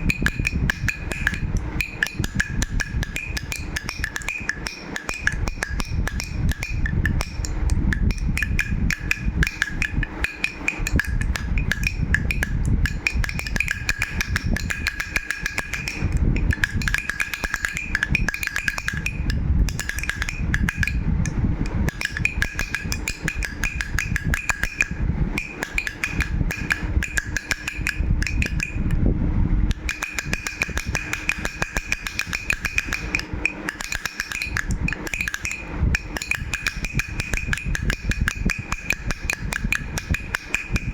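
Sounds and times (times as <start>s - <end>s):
baby rattle shaken: 0.0s - 21.2s, 29.7s - 40.9s
steady high ringing: 0.0s - 40.9s.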